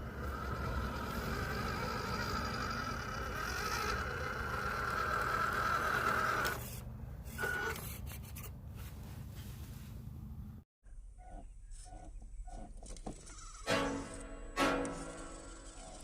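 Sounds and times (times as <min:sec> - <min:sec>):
small electric motor whining: 0:00.0 - 0:08.0.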